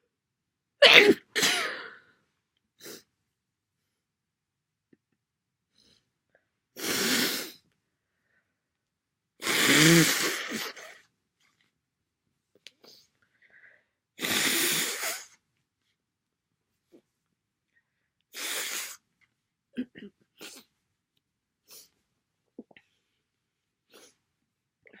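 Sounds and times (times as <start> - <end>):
person sneezing: 0.8 - 2.0, 6.8 - 7.6, 9.4 - 11.0, 14.2 - 15.4, 18.4 - 19.0.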